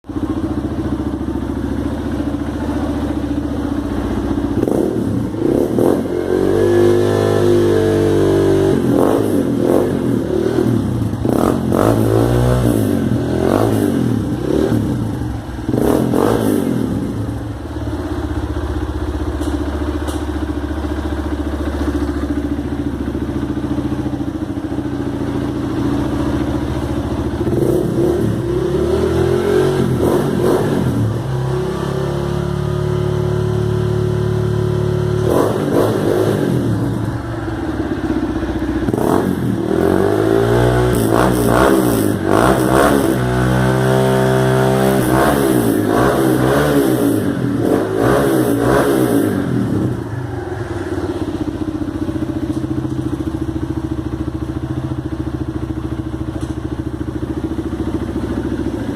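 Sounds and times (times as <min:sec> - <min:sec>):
motorcycle engine revving: 0:00.0 - 0:58.9.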